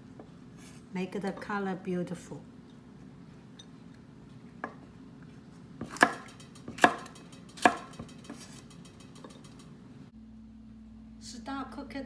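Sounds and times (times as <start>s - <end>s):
knife chopping on cutting board: 5.8s - 8.7s.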